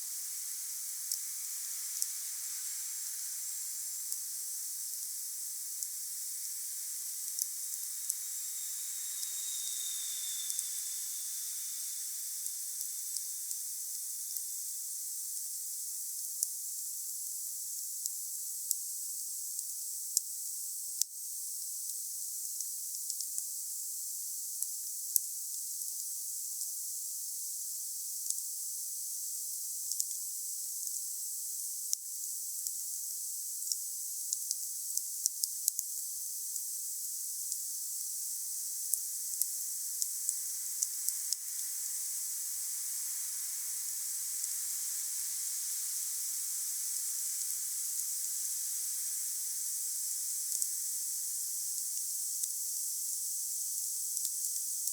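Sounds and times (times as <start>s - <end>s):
faint high whistle: 0.0s - 14.4s
bonfire crackling and hissing: 39.0s - 51.5s.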